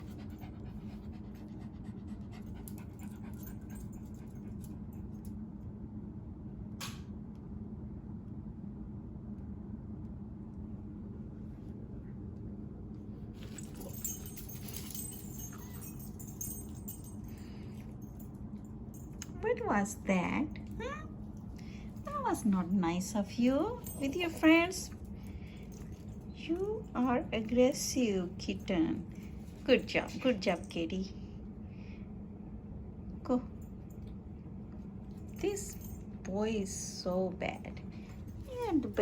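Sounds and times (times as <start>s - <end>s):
dog panting: 0.0s - 4.6s
low steady hum: 0.0s - 39.0s.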